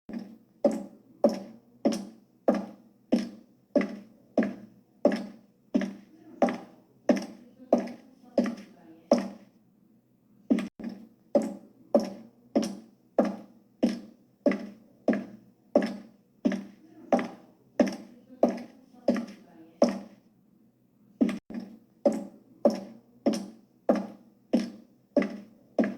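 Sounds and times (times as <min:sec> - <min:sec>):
high heels walking: 0:00.1 - 0:09.5, 0:10.5 - 0:20.2, 0:21.2 - 0:25.9.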